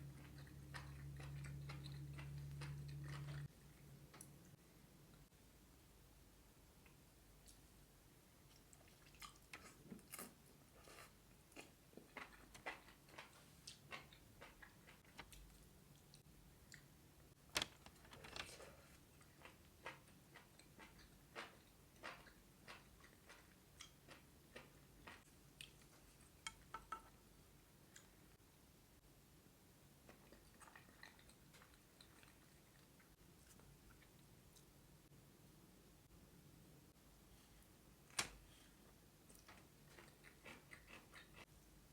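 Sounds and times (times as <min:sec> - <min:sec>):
person chewing food: 0:00.0 - 0:04.5, 0:08.4 - 0:17.0, 0:18.3 - 0:27.2, 0:30.0 - 0:34.8, 0:38.7 - 0:41.6.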